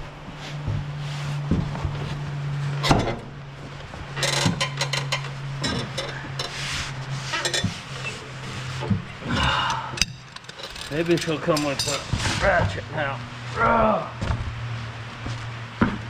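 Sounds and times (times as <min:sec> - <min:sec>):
steady low hum: 0:00.0 - 0:16.0
hand tools clinking on metal: 0:09.7 - 0:12.2.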